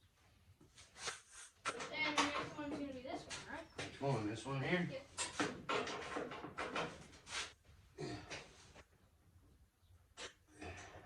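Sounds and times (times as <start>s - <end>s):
tools and metal parts clattering: 5.2s - 7.0s.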